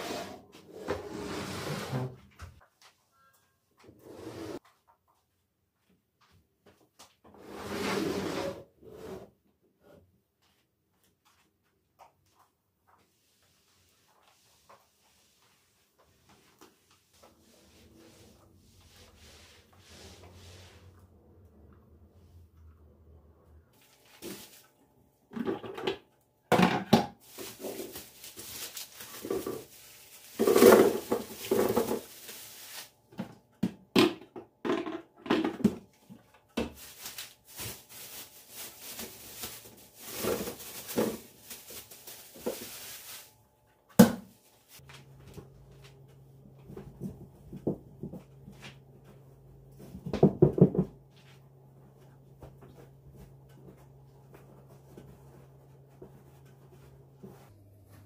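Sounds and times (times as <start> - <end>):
household handling knocks and clatters: 25.3 - 32.2, 45.0 - 51.1.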